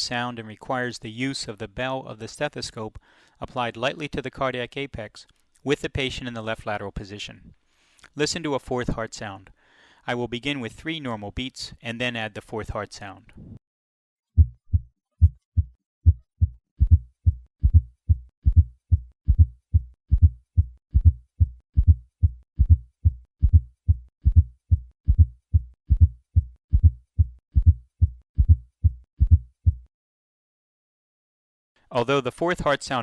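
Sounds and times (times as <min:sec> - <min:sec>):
heartbeat through stethoscope: 0:14.4 - 0:29.9
soft low heart thud: 0:14.4 - 0:29.9.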